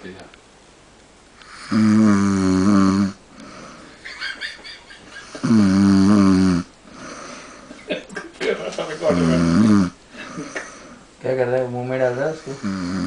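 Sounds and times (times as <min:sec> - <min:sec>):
man snoring loudly: 0:01.5 - 0:03.8, 0:05.4 - 0:07.2, 0:09.0 - 0:10.4, 0:12.2 - 0:13.0.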